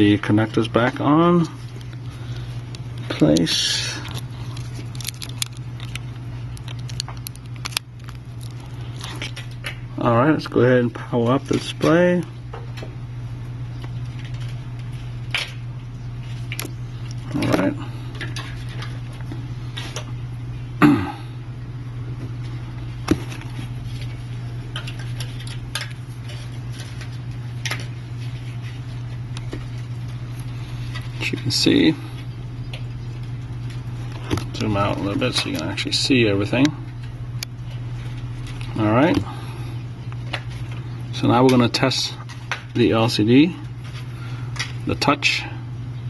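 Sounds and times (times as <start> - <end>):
steady low hum: 0.0 - 46.0
phone parts being handled: 2.7 - 9.4.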